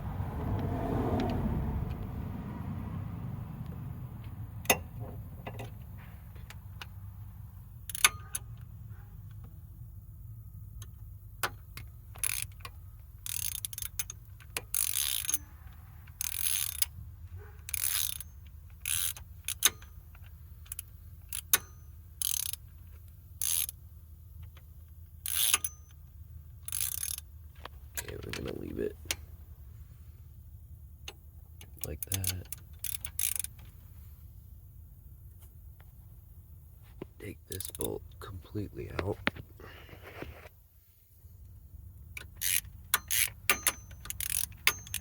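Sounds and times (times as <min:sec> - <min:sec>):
ratchet wrench clicking: 0:07.8 - 0:08.5, 0:10.8 - 0:23.8, 0:24.4 - 0:26.0, 0:26.6 - 0:27.3, 0:31.1 - 0:33.7, 0:37.5 - 0:37.9, 0:42.1 - 0:45.0.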